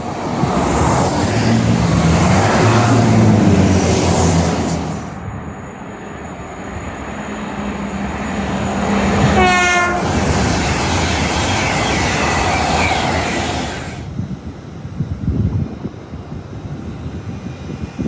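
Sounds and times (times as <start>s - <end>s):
train rushing past: 0.0s - 18.0s
train horn note: 9.2s - 10.2s.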